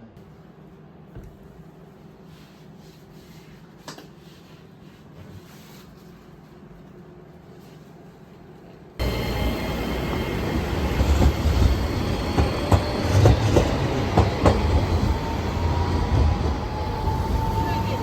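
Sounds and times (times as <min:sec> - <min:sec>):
train rumbling on rails: 0:09.0 - 0:18.0.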